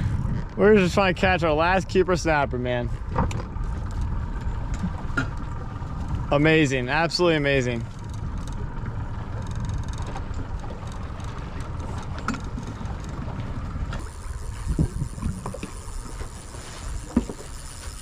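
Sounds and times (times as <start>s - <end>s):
low rumbling aboard boat: 0.0s - 18.0s.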